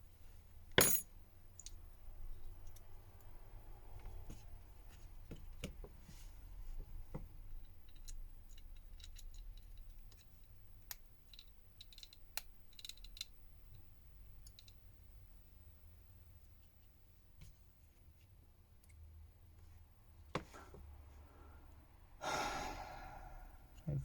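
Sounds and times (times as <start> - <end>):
small tools clicking and tapping: 7.1 - 14.8.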